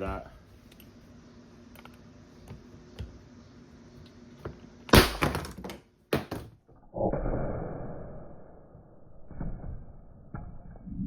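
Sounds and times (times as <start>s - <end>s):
sharp crack: 4.9s - 5.3s
nail gun bang: 4.9s - 6.4s.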